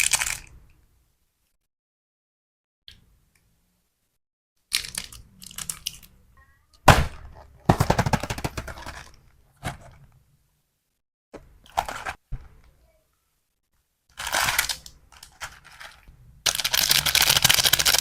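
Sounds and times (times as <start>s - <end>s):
snack packaging crackling: 4.6s - 6.1s, 14.1s - 18.0s.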